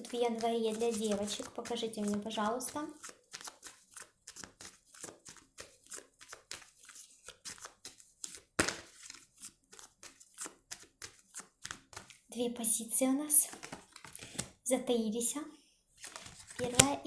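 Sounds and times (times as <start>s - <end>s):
cards being shuffled: 0.0s - 12.3s, 13.4s - 14.5s, 16.0s - 17.0s
card slap: 8.6s - 9.1s.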